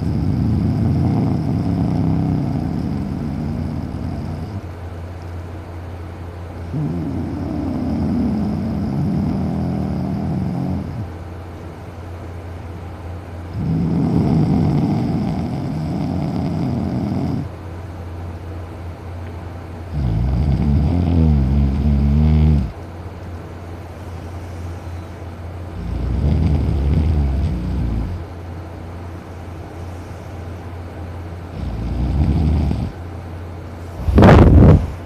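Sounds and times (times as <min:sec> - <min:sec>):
man snoring loudly: 0:00.0 - 0:04.7, 0:06.7 - 0:11.1, 0:13.5 - 0:17.5, 0:19.9 - 0:22.8, 0:25.8 - 0:28.2, 0:31.5 - 0:33.0.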